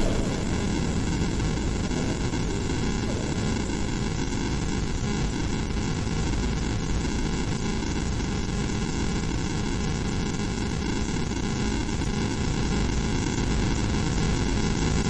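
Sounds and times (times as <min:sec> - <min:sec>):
harsh static noise: 0:00.0 - 0:04.6
hum: 0:00.0 - 0:04.7.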